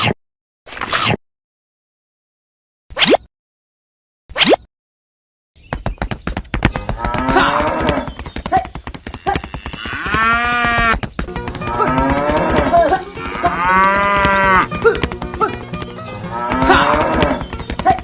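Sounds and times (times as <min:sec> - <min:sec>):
cattle mooing: 0:07.0 - 0:08.1, 0:09.2 - 0:15.6, 0:16.2 - 0:17.5.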